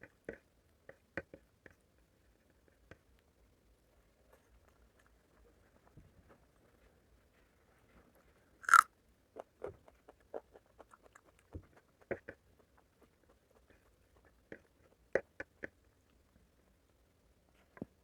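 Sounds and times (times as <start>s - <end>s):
crunchy bite: 8.6s - 8.9s
chewing with wet mouth smacks: 8.6s - 14.7s.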